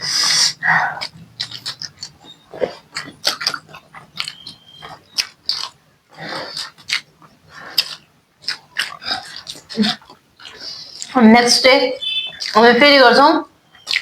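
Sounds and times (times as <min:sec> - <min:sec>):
crunching and chewing food: 0:00.0 - 0:14.0.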